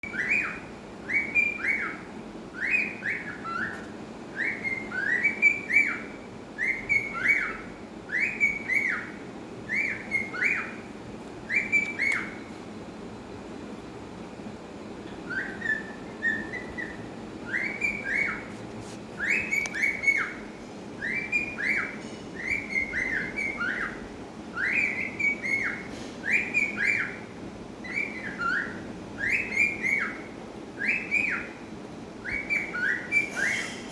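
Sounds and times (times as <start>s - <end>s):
cockatiel whistling: 0.0s - 10.8s, 11.5s - 12.5s, 15.2s - 18.5s, 19.2s - 31.6s, 32.2s - 33.9s.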